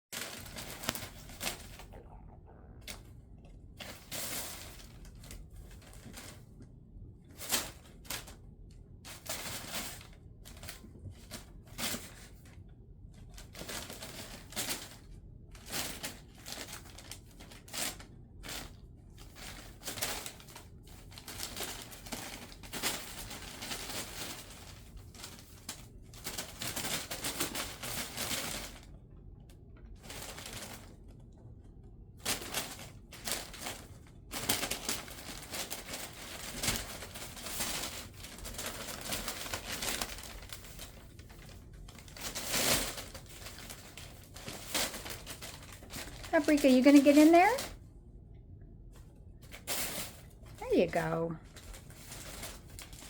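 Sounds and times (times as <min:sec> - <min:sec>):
cardboard packaging rustling: 0:00.2 - 0:02.1, 0:13.2 - 0:28.9, 0:32.2 - 0:47.8, 0:49.4 - 0:53.0
kittens scrambling on packaging: 0:00.2 - 0:06.6, 0:07.2 - 0:29.0, 0:29.8 - 0:31.2, 0:32.2 - 0:47.8, 0:49.4 - 0:53.0.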